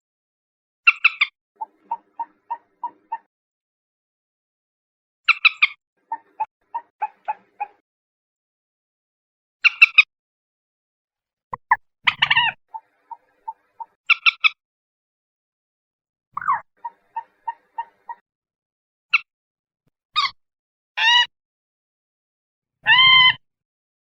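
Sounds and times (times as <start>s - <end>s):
moorhen calling: 1.0s - 3.3s, 11.6s - 14.5s, 16.4s - 18.2s.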